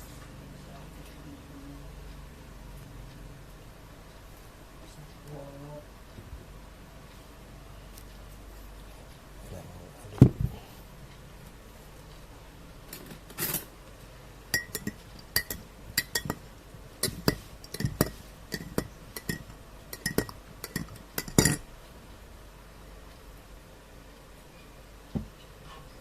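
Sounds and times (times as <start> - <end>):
spoon clattering in glass: 14.6 - 16.4, 17.0 - 21.6
spoon clinking against glass: 14.6 - 16.4, 17.0 - 21.6.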